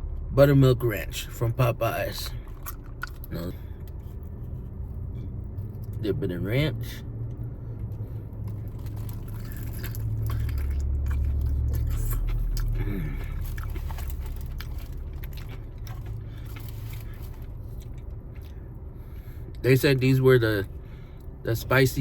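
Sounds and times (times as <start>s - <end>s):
low rumble: 0.0s - 19.6s
crunchy chewing: 2.3s - 6.0s, 7.8s - 19.3s.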